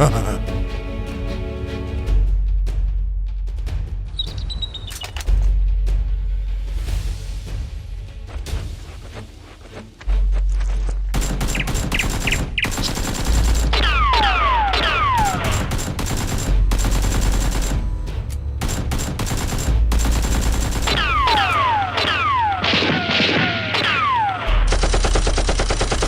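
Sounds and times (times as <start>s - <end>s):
automatic gunfire bursts: 11.2s - 17.9s, 18.6s - 26.0s.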